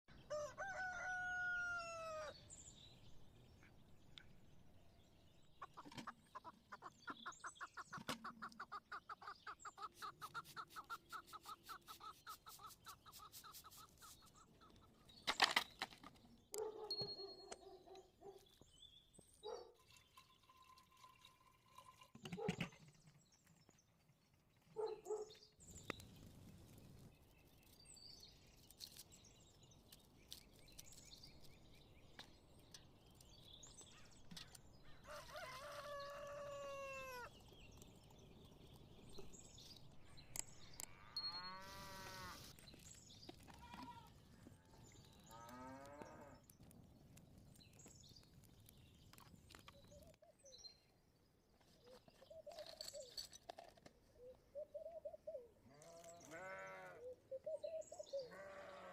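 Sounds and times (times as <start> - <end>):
livestock calling: 58.2 - 58.9.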